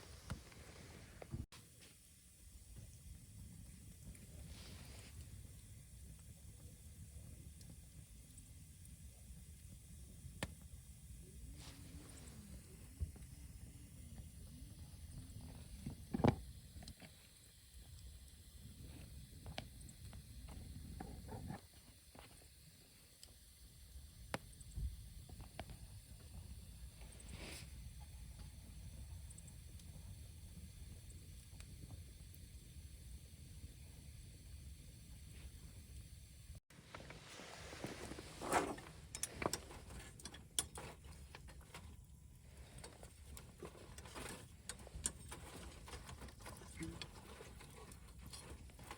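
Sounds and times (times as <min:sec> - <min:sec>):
campfire crackling: 0:00.0 - 0:01.5, 0:02.3 - 0:48.9
campfire crackling and popping: 0:05.1 - 0:13.4.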